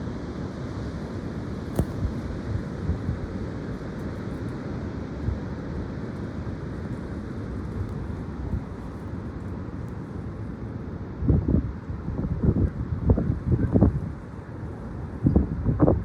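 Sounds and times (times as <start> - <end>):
gusty wind on microphone: 1.4 - 4.3, 7.0 - 16.0.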